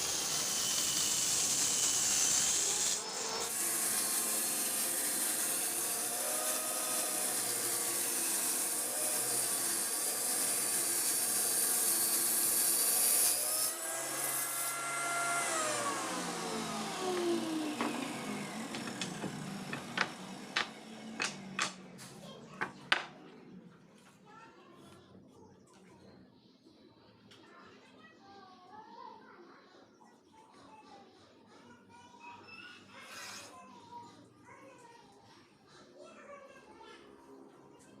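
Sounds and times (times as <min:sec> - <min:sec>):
electric saw cutting wood: 0:00.0 - 0:21.8.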